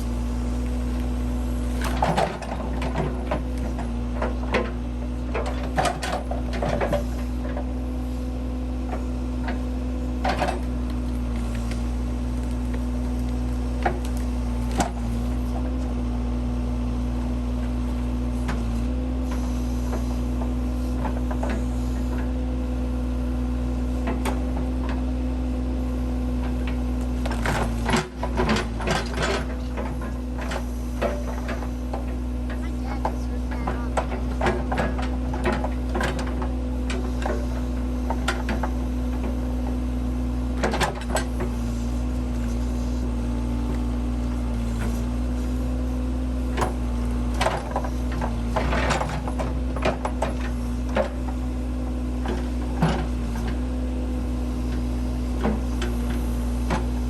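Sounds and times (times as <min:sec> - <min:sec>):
backhoe engine idling: 0:00.0 - 0:57.0.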